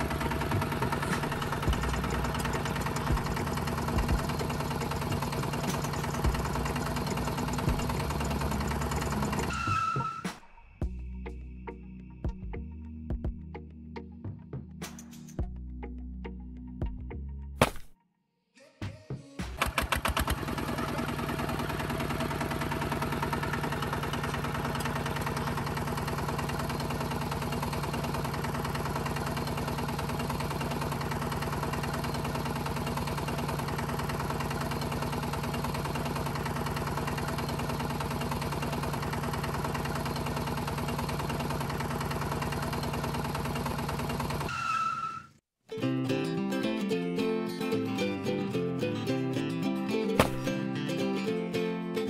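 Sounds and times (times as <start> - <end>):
small tractor engine running: 0.0 - 10.2, 19.4 - 45.2, 50.2 - 50.6.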